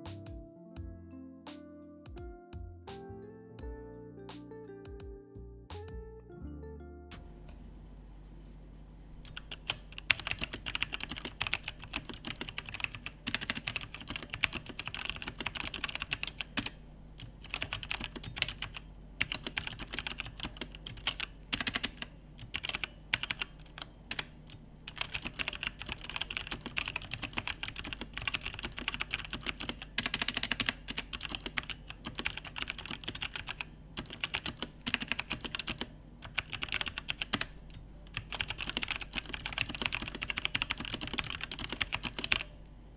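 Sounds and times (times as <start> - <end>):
mechanical keyboard typing: 9.3 - 42.5.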